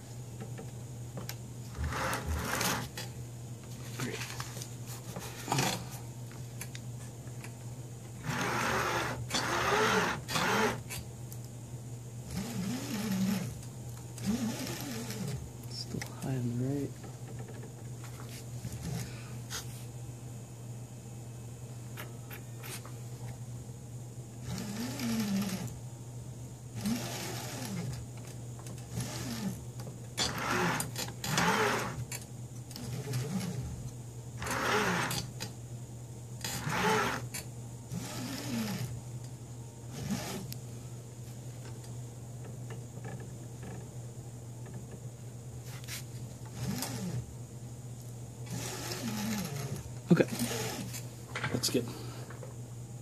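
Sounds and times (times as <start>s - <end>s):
steady low hum: 0.0s - 53.0s
stepper motors whirring: 1.7s - 3.0s, 8.2s - 11.0s, 12.3s - 13.6s, 14.2s - 16.1s, 24.4s - 25.7s, 26.8s - 28.0s, 30.2s - 32.1s, 34.4s - 35.3s, 36.4s - 38.9s, 46.5s - 47.2s, 48.5s - 51.0s.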